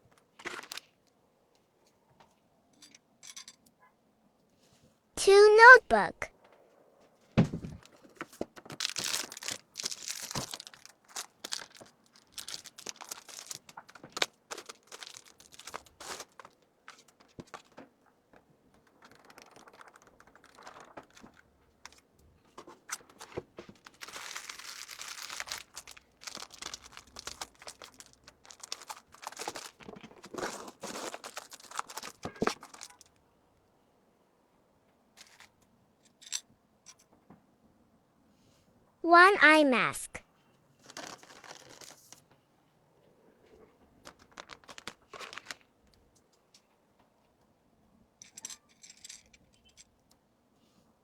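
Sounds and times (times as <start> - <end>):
packaging crinkling: 8.5 - 17.8, 18.8 - 22.0, 22.8 - 33.1, 40.8 - 42.2, 44.0 - 45.7.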